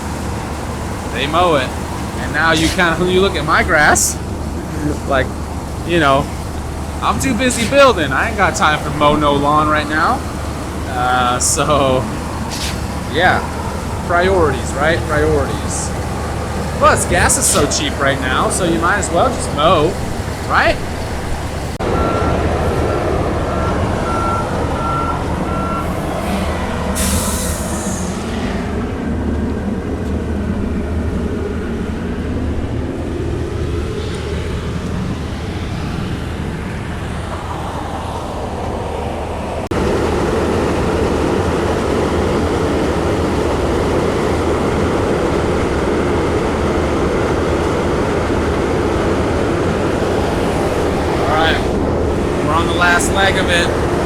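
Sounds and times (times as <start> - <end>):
diesel truck engines running: 0.0 - 54.0
burst of hiss: 27.0 - 28.4.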